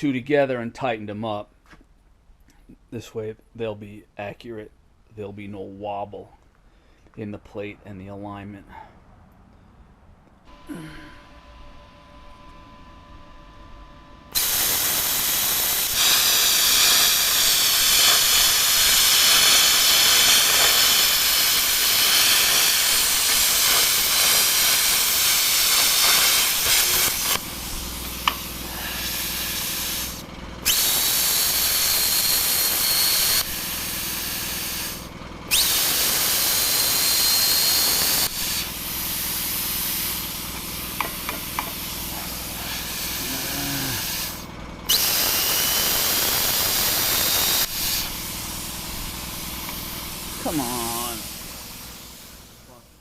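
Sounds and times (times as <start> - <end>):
low steady hum: 9.3 - 14.4
compressed air hissing: 14.3 - 53.0.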